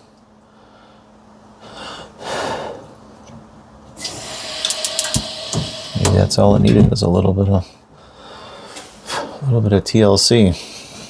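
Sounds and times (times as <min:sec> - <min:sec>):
steady high hiss: 0:03.9 - 0:07.7.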